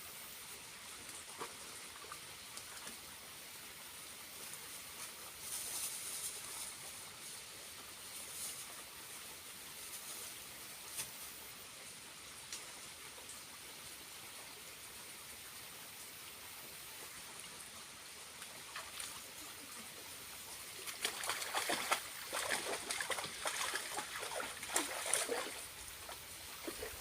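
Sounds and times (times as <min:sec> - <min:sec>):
small waterfall trickling: 0:00.1 - 0:27.0
irregular splashing in water: 0:20.8 - 0:27.0.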